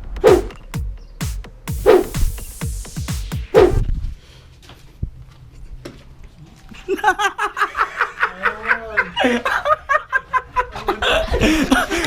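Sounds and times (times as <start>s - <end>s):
hearty laughter: 6.8s - 12.0s.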